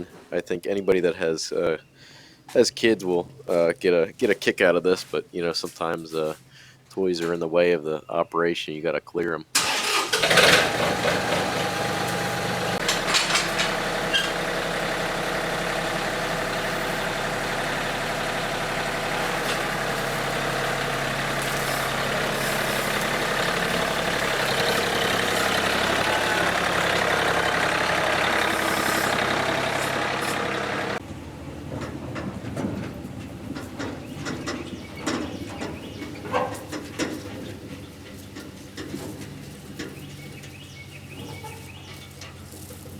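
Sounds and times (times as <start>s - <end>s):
faint birdsong: 0.0s - 3.6s, 5.8s - 9.5s, 33.8s - 36.8s, 39.6s - 42.5s
tractor engine running: 9.6s - 42.9s.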